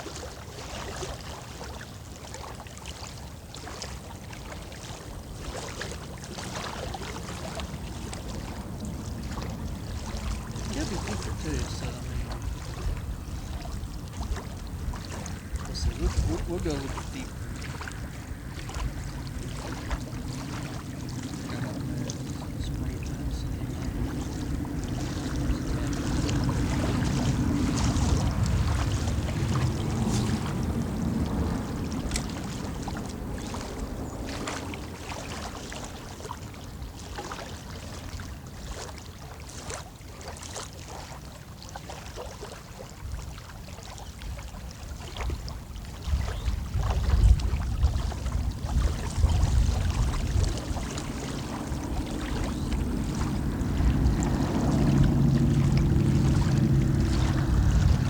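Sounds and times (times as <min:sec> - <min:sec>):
water lapping and splashing: 0:00.0 - 0:58.0
wind buffeting microphone: 0:04.5 - 0:38.7, 0:44.1 - 0:58.0
low rumble: 0:08.5 - 0:34.0, 0:47.4 - 0:58.0.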